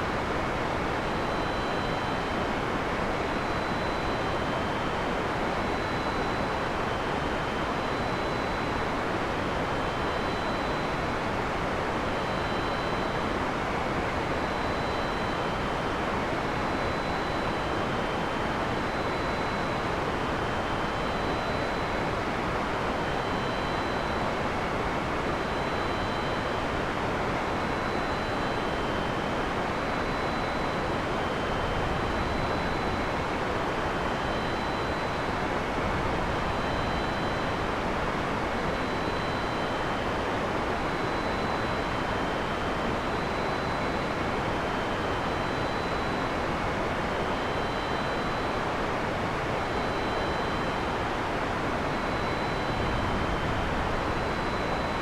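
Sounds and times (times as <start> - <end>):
faint high-pitched tones: 0.0 - 55.0.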